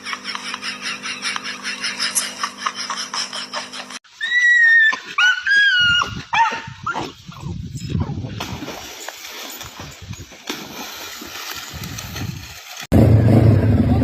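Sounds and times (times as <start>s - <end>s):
dog whining: 4.2s - 7.1s.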